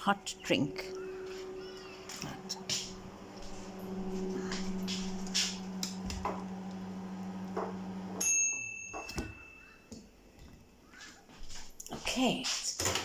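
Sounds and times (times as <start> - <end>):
microwave oven humming: 0.0 - 10.4.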